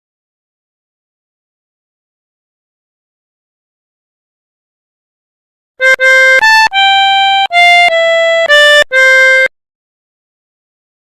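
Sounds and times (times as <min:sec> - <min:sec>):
melodica playing a tune: 0:05.8 - 0:09.5.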